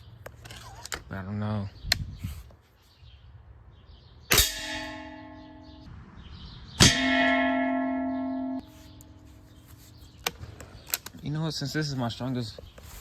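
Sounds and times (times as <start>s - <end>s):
pellet striking ringing metal: 4.3s - 5.9s, 6.8s - 9.6s.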